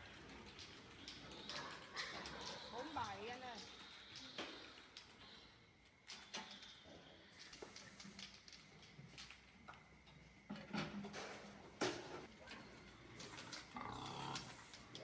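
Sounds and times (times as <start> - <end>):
pigs grunting: 0.8 - 5.7, 13.2 - 14.8.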